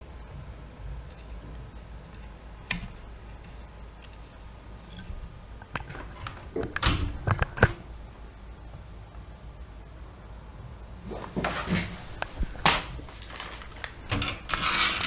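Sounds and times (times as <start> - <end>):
loud clicks and knocks: 5.6 - 8.0, 11.2 - 15.0
microphone hum and hiss: 10.7 - 15.0.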